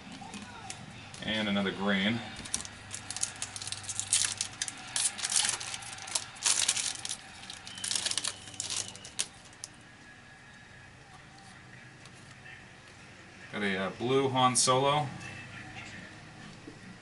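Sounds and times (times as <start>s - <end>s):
foil wrapper rustling and crinkling: 2.4s - 9.8s.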